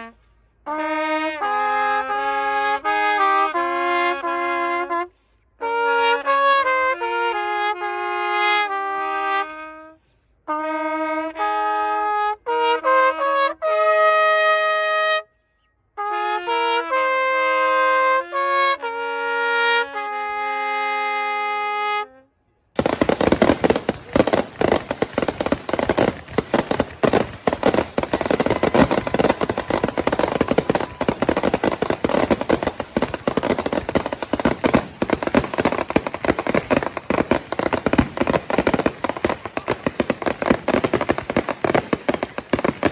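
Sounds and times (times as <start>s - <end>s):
anthem played on brass: 0.0s - 15.4s, 16.0s - 42.9s
fireworks crackling and popping: 22.8s - 42.9s.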